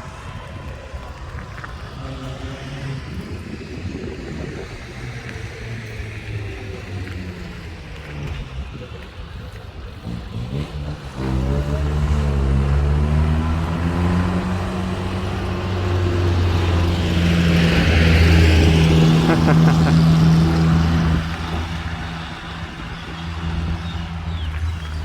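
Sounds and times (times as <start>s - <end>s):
engine running close by: 0.0s - 25.0s.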